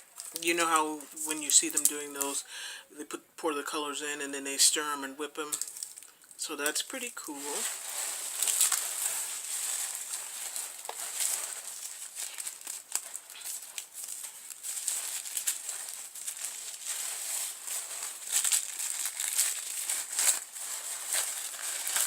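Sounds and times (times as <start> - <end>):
packaging crinkling: 0.0 - 2.4, 5.4 - 22.0.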